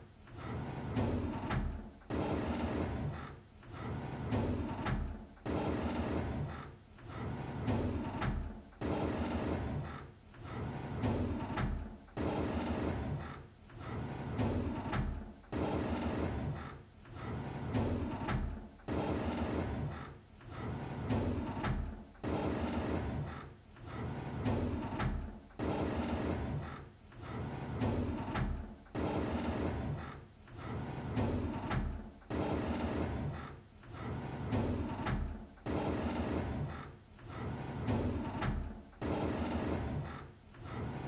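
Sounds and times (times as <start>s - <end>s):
drawer sliding open: 20.6s - 41.0s.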